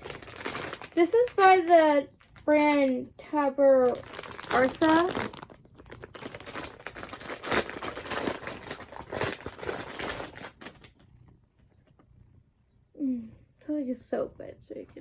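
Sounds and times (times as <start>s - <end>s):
plastic packaging crinkling: 0.0s - 11.2s.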